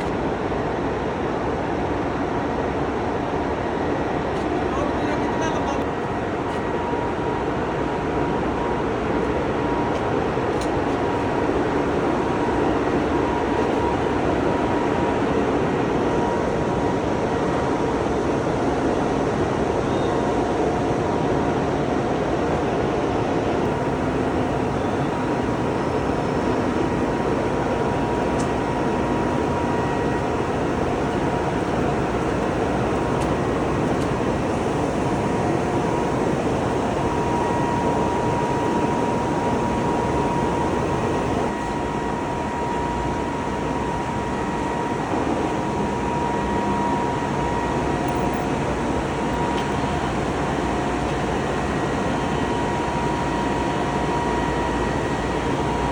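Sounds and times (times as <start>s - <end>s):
glass-cutting machinery whine: 22.8s - 55.9s.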